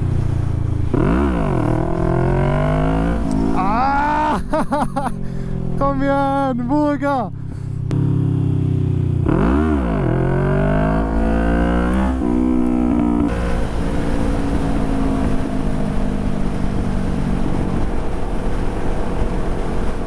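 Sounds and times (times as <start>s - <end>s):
rushing wind noise: 0.0s - 5.9s, 11.0s - 20.0s
motorcycle engine revving: 0.0s - 20.0s.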